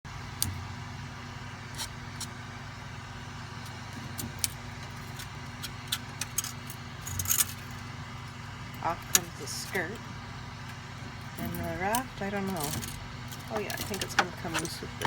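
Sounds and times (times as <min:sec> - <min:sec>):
printer fans humming: 0:00.1 - 0:15.0.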